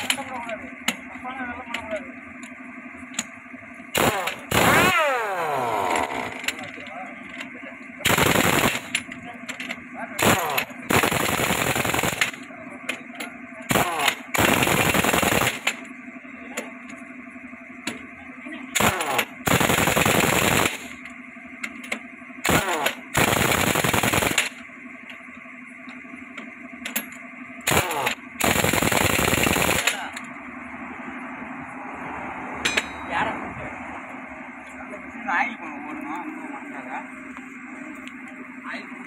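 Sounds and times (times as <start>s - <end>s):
steady hum: 0.0s - 32.0s
pneumatic impact wrench rattling: 3.9s - 6.8s, 8.0s - 12.4s, 13.7s - 15.9s, 18.8s - 21.0s, 21.7s - 24.6s, 26.9s - 30.2s.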